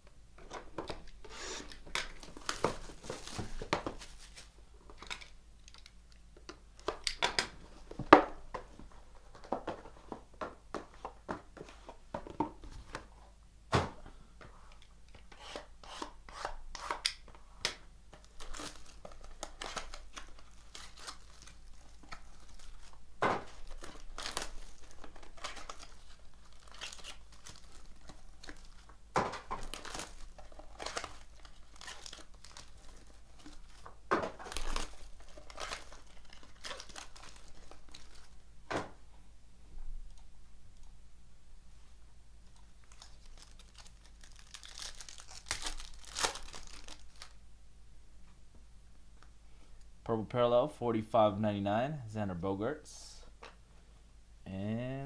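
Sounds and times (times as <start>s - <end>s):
wrapper crinkling and tearing: 18.2s - 38.4s, 42.6s - 47.4s.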